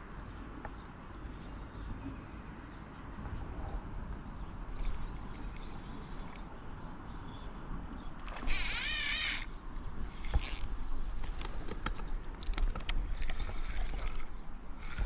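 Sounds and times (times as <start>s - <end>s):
fishing reel whirring: 8.3s - 10.8s.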